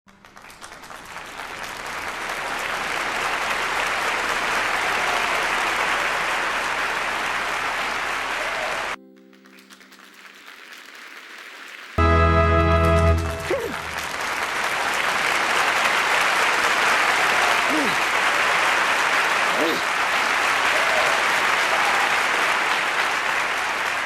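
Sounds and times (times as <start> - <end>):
crowd applauding and cheering: 0.1 - 24.0
loud sustained musical chord: 12.0 - 14.2.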